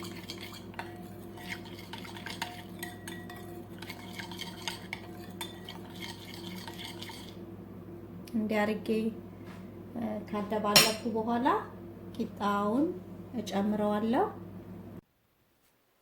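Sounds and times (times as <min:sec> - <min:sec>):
spoon clinking against bowl: 0:00.0 - 0:07.2, 0:10.8 - 0:11.1
steady low hum: 0:00.0 - 0:15.0.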